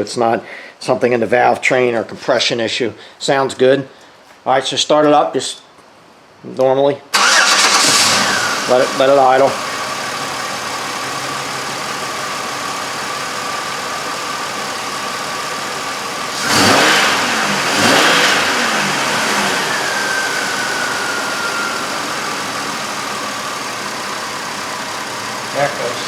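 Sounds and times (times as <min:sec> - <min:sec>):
car engine idling and revving: 0:07.2 - 0:26.0.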